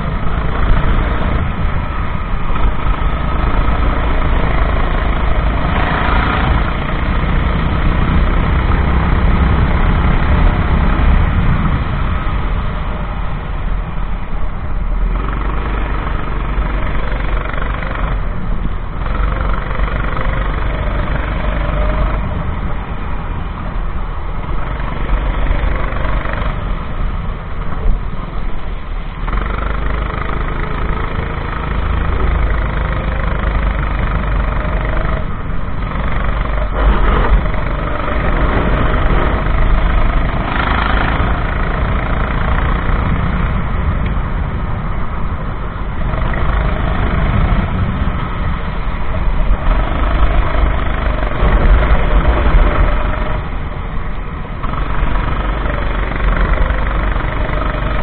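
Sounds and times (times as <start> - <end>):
kart engine running hard: 0.0 - 58.0.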